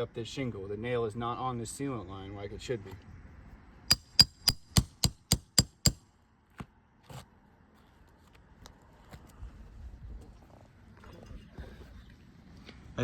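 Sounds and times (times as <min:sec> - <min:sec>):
hammer striking metal tool: 0:03.9 - 0:06.0.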